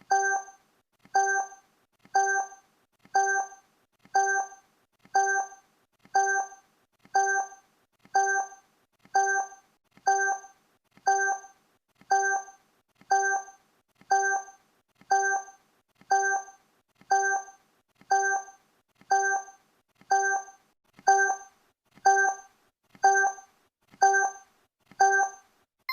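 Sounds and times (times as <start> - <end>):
countdown timer electronic blip: 22.1 - 22.4, 23.1 - 23.4.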